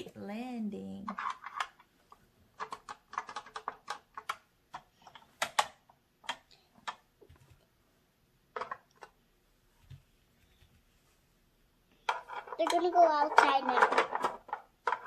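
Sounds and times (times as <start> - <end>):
plastic toys clicking and tapping: 0.8 - 7.7, 8.5 - 9.2, 11.9 - 15.0.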